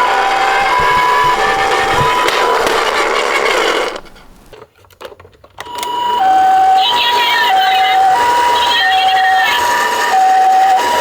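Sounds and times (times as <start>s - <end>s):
rough noise: 0.0s - 4.6s
toy siren two-tone: 5.7s - 11.0s.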